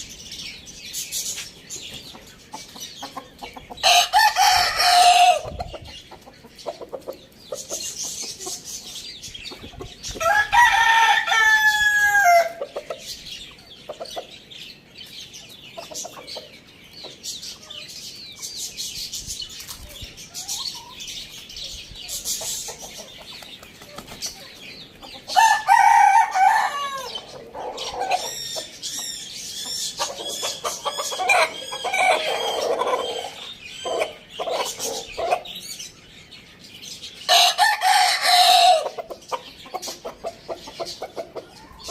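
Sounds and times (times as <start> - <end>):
small birds chirping: 0.0 - 41.9
hen clucking: 1.8 - 14.4, 15.7 - 17.8, 19.8 - 21.1, 22.0 - 35.7, 37.4 - 41.9
rooster crowing: 3.8 - 5.5, 10.2 - 12.6, 25.4 - 28.2, 37.3 - 38.9.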